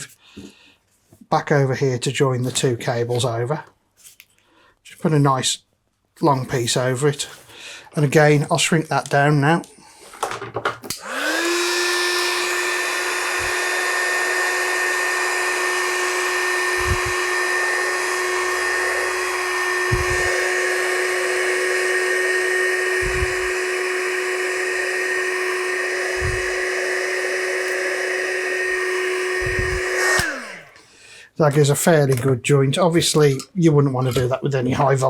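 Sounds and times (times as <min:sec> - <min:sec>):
heat gun fan whine: 0:10.9 - 0:30.8.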